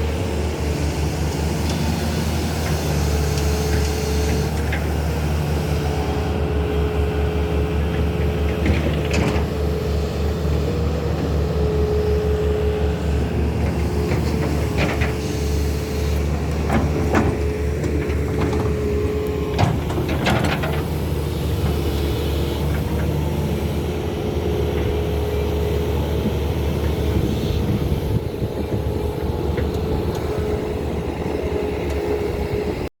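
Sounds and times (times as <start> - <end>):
excavator diesel engine running: 0.0 - 32.9
steady mechanical whine: 0.0 - 32.9.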